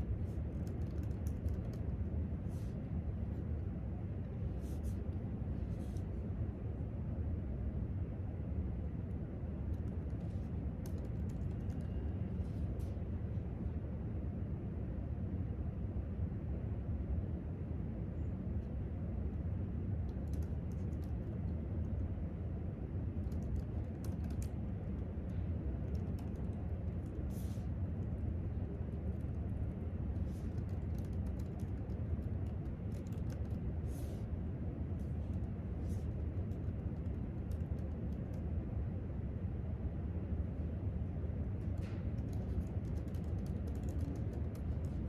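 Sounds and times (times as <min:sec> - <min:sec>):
low room rumble: 0:00.0 - 0:45.0
laptop keyboard typing: 0:00.5 - 0:02.0, 0:09.7 - 0:12.0, 0:20.1 - 0:21.3, 0:23.2 - 0:25.1, 0:25.8 - 0:27.5, 0:30.2 - 0:34.2, 0:35.4 - 0:38.5, 0:41.8 - 0:45.0.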